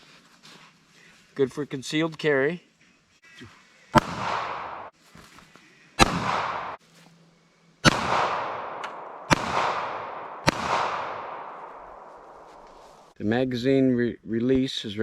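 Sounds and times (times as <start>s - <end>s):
pistol shots with echo: 4.0s - 4.9s, 6.0s - 6.8s, 7.8s - 12.6s.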